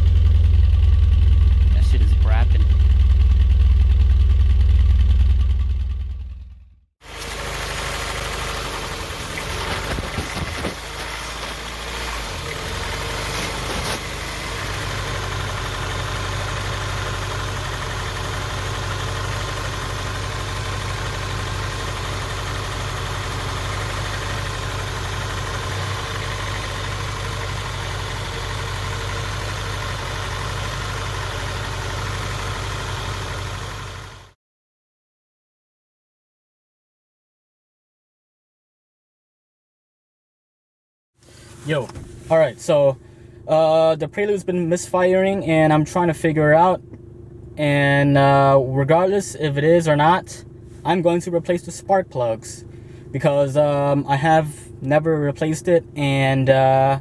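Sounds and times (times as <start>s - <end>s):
car engine idling rough: 0.0s - 34.4s, 41.2s - 57.0s
engine knocks: 7.1s - 16.8s.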